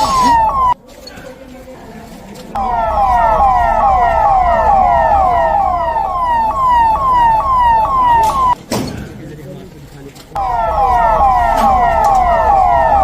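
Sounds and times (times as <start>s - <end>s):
emergency vehicle siren wailing: 0.0s - 0.8s, 2.6s - 8.6s, 10.4s - 13.0s.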